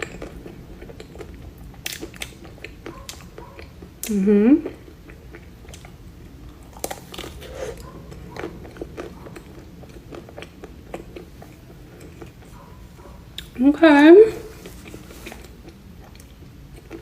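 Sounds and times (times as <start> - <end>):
pastry crunching: 5.1 - 12.6.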